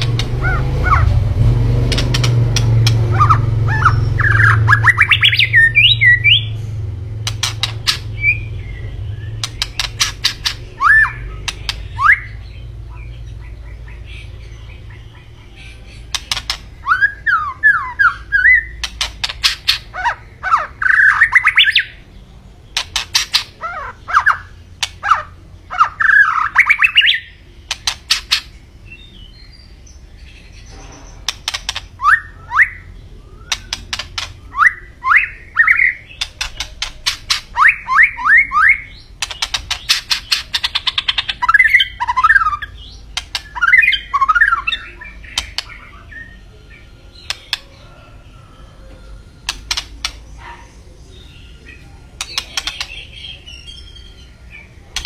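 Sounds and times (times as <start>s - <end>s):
bird singing clicks and whistles: 1.9s - 6.4s, 7.2s - 8.1s, 9.4s - 12.2s, 16.0s - 17.3s, 18.0s - 19.9s, 22.7s - 23.5s, 24.2s - 25.2s, 25.9s - 28.5s, 30.7s - 32.7s, 33.4s - 38.4s, 39.2s - 45.9s, 47.2s - 47.7s, 49.4s - 50.3s, 52.2s - 53.1s.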